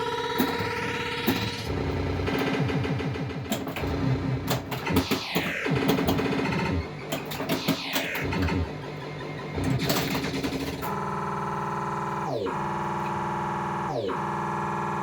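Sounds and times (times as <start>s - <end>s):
electronic sound effects: 0.0s - 15.0s
pinball playfield clicks and knocks: 0.1s - 8.8s, 9.6s - 10.9s
buzzing synthesized tone: 10.9s - 15.0s.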